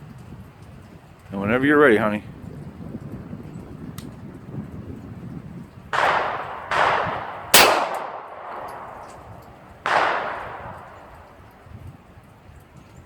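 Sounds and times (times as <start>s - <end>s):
pistol shots echoing: 5.9s - 11.6s.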